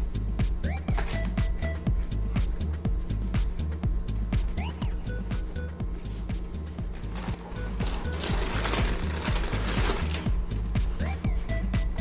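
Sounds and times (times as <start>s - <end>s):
electronic music with steady beat: 0.0s - 12.0s.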